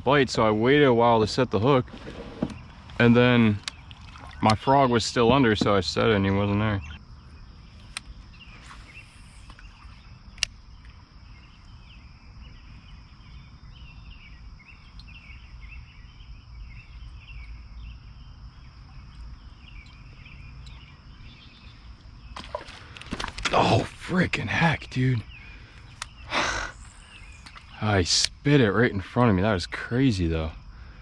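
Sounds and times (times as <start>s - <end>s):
bird chirps: 2.5s - 22.6s, 24.2s - 28.0s
sharp click: 10.3s - 10.6s
high-pitched insect drone: 26.2s - 28.1s.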